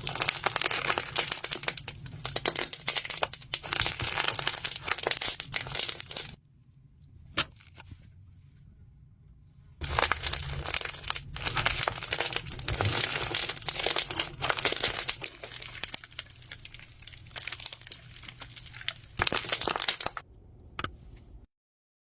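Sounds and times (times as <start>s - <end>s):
slime crackling and popping: 0.0s - 6.4s, 9.8s - 20.2s.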